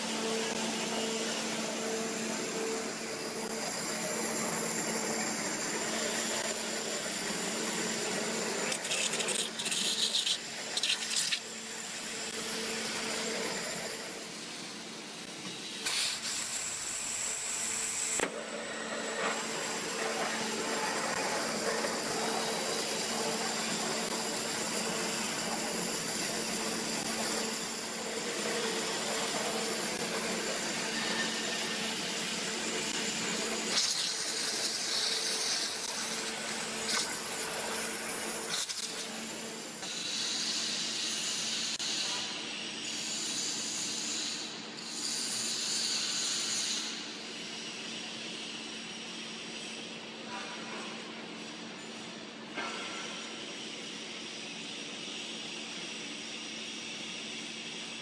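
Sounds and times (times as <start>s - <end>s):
steady machine hum: 0.0s - 39.9s.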